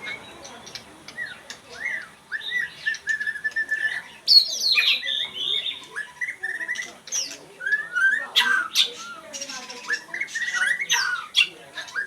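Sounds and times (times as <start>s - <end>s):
bird singing whistled notes: 1.2s - 6.9s.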